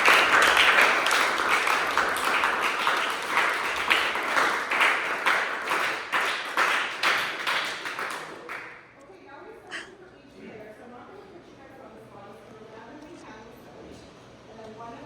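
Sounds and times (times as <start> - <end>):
people applauding and cheering: 0.0 - 8.9.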